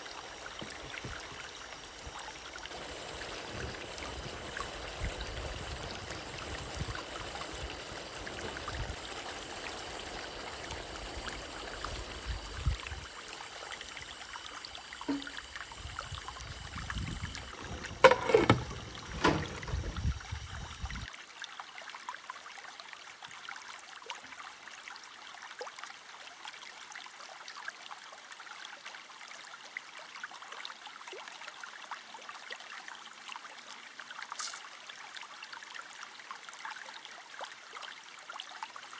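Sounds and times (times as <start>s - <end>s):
clattering knocks: 15.1s - 15.5s, 17.4s - 20.1s.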